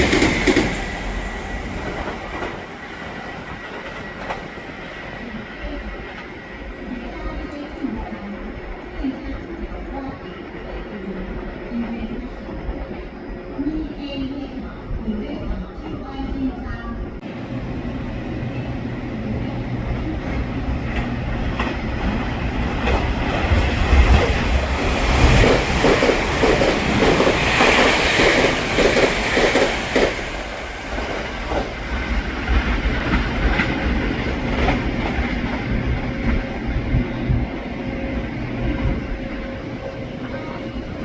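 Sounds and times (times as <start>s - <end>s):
train rumble: 0.0s - 41.0s
train wheels clattering over rail joints: 21.0s - 37.4s.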